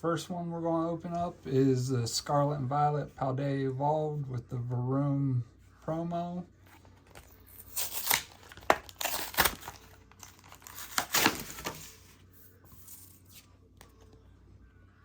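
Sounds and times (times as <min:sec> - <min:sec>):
faint handling sounds: 0:05.4 - 0:14.4
packaging tearing and crinkling: 0:07.1 - 0:11.8.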